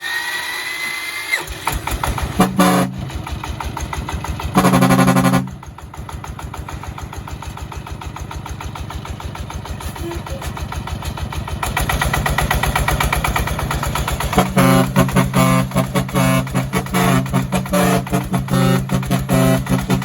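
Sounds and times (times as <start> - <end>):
diesel engine idling: 1.4 - 20.0
truck horn honking: 2.2 - 3.4, 4.4 - 5.7, 14.2 - 20.0.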